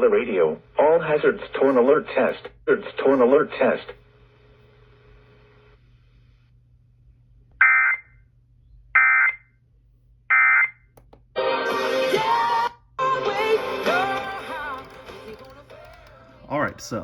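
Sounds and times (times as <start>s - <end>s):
music: 11.4s - 17.0s.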